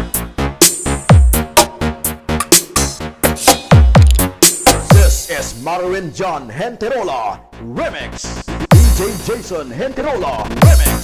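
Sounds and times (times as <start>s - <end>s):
electronic dance music: 0.0s - 6.3s, 7.0s - 11.0s.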